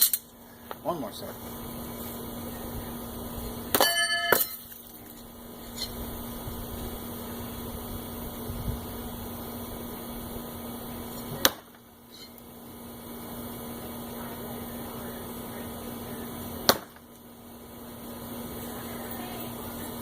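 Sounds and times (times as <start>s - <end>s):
knives striking a wooden target: 11.4s - 11.8s, 16.7s - 17.0s.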